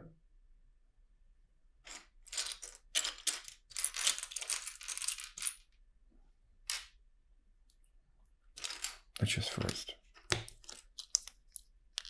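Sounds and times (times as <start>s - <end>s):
plastic bricks clattering: 1.8s - 5.7s, 8.5s - 12.0s.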